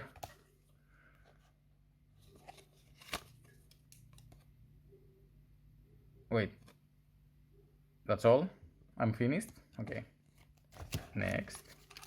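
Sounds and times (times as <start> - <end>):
paper cards clicking and rustling: 2.2 - 4.5, 10.4 - 12.0.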